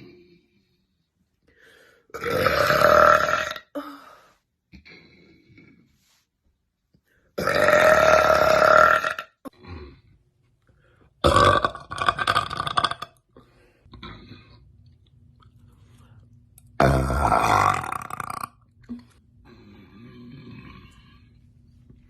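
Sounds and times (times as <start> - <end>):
woman burping loudly: 2.1 - 3.9, 7.4 - 9.9, 11.2 - 13.2, 16.8 - 18.7.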